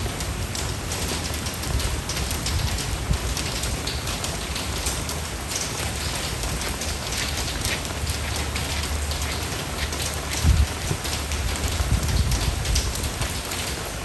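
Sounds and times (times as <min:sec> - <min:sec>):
steady rain: 0:00.0 - 0:14.0.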